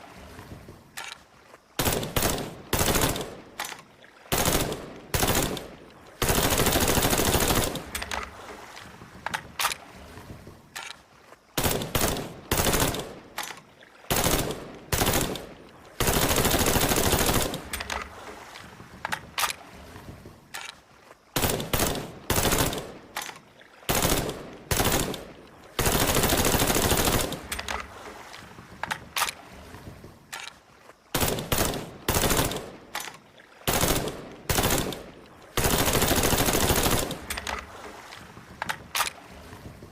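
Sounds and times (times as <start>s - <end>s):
automatic rifle bursts: 33.7s - 37.7s.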